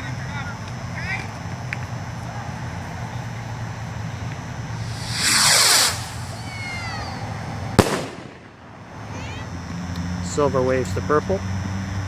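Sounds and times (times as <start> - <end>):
rocket launching whoosh: 4.8 - 8.8.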